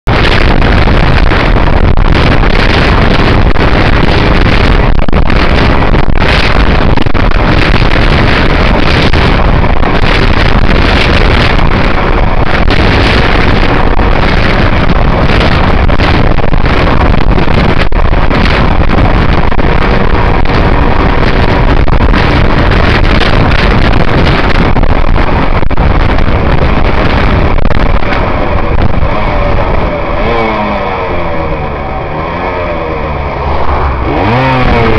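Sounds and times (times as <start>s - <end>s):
wind rushing on microphone: 0.0s - 34.9s
two-stroke motorcycle engine running: 0.1s - 34.9s.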